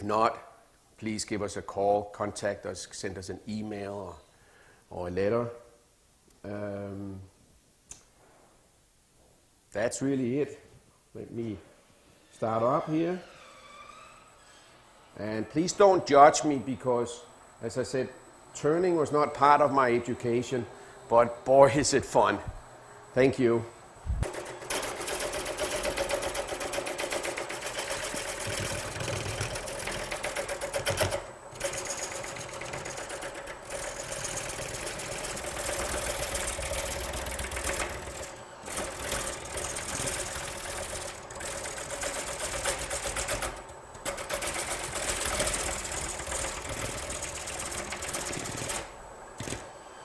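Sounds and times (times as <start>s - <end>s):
lathe tool chattering on wood: 24.2s - 49.7s.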